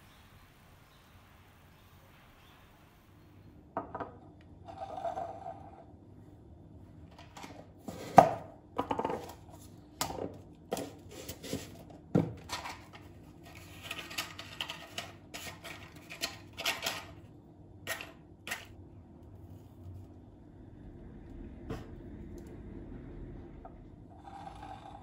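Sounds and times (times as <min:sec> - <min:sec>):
utensils and dishes clattering: 0:13.6 - 0:17.2.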